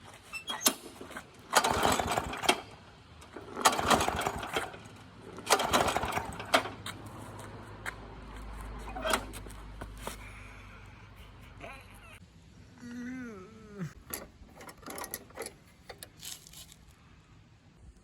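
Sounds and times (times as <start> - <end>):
lawn mower pull-start rattling: 0.3 - 7.2, 8.9 - 9.4, 14.0 - 16.9.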